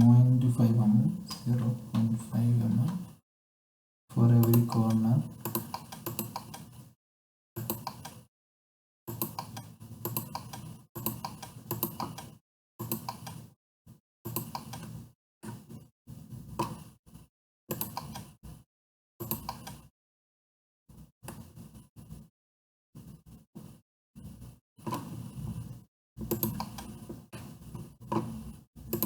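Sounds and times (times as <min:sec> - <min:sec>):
computer keyboard typing: 0:04.3 - 0:06.7, 0:09.1 - 0:13.4, 0:26.2 - 0:27.0.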